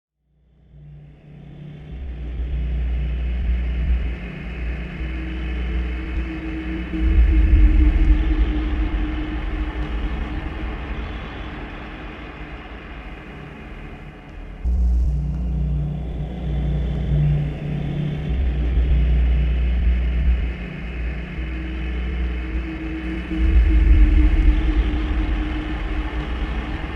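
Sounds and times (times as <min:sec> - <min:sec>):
deep electronic drone: 0:00.5 - 0:26.9
steady low hum: 0:01.1 - 0:26.9
deep rumble: 0:01.8 - 0:26.9.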